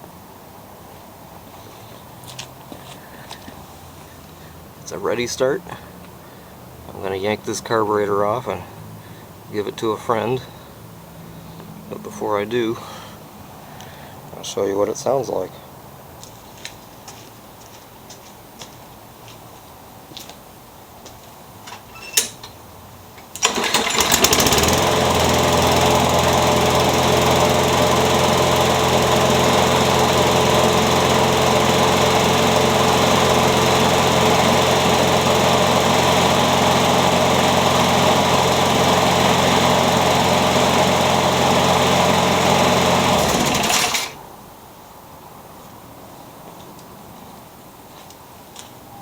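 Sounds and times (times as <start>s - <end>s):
person talking: 4.8s - 5.9s, 6.9s - 8.7s, 9.5s - 10.6s, 11.9s - 13.1s, 14.3s - 15.7s
lawn mower pull-start: 21.8s - 22.6s, 23.2s - 44.2s
lawn mower engine running: 23.3s - 44.2s.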